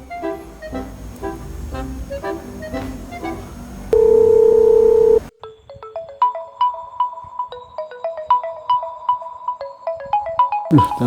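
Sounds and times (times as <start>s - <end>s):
loud steady telephone beep: 3.9s - 5.3s
mobile phone ringtone melody: 3.9s - 5.3s.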